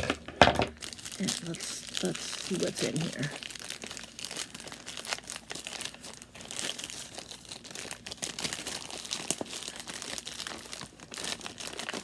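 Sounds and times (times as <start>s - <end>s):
packaging crinkling: 0.0s - 12.0s
packaging tearing: 0.0s - 12.0s.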